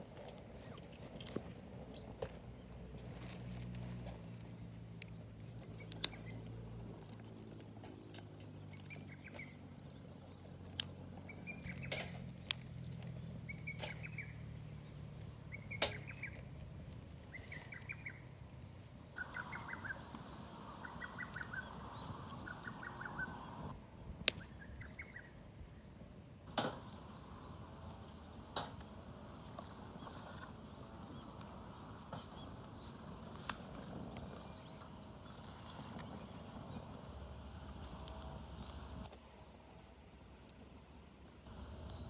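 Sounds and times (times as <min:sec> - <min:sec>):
bird trilling call: 0:19.2 - 0:23.7
sharp cracks: 0:26.5 - 0:29.6.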